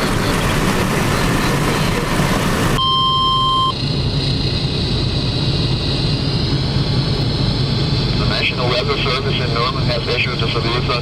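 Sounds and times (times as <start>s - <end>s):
vehicle road noise: 0.0s - 2.8s
radio alert tone beep: 2.8s - 3.8s
radio hum and hiss: 8.2s - 11.0s.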